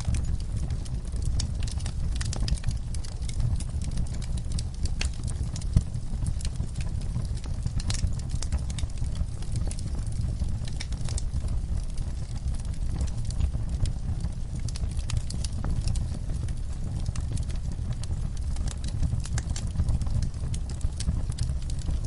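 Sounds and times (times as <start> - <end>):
fire pops and snaps: 0.0 - 22.0
low rumble of flames: 0.0 - 22.0
wood fire crackling: 0.0 - 22.0.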